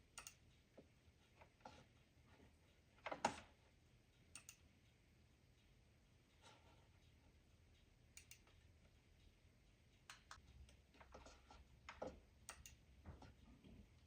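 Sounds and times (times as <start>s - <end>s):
computer mouse and keyboard clicks: 0.0s - 3.6s, 4.3s - 4.7s, 6.3s - 8.7s, 10.0s - 13.4s.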